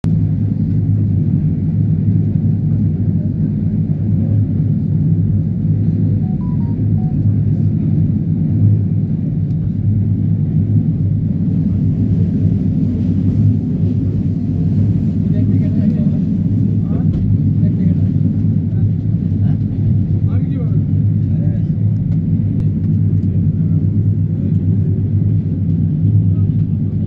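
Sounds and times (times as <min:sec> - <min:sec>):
train rumbling: 0:10.8 - 0:27.0.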